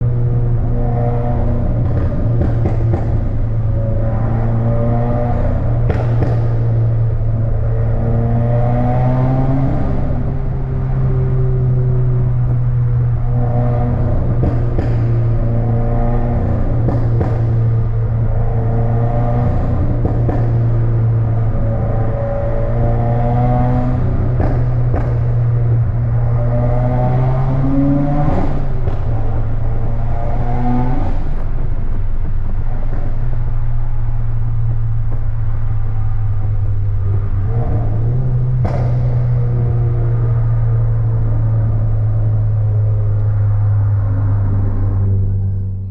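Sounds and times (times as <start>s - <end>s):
car engine exhaust drone: 0.0s - 45.9s
sharp exhaust pops: 38.0s - 39.6s.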